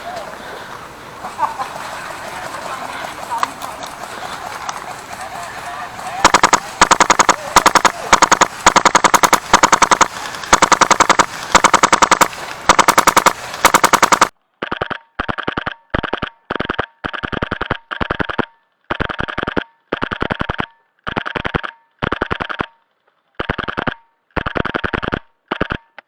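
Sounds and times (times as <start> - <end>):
airsoft rifle full-auto bursts: 4.1 - 14.3.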